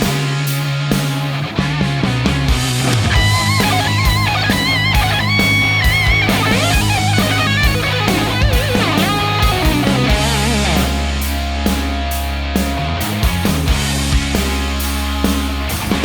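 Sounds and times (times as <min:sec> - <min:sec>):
rock music with electric guitar: 0:00.0 - 0:16.0.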